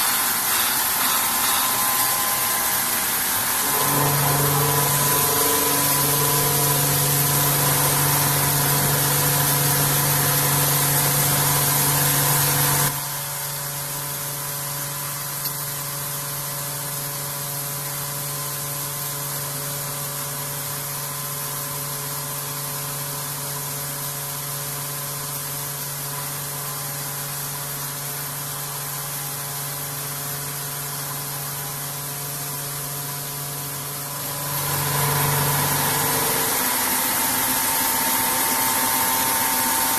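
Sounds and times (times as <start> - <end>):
steady machine tones: 0.0 - 13.0
machine hum: 0.0 - 13.6, 33.8 - 39.9.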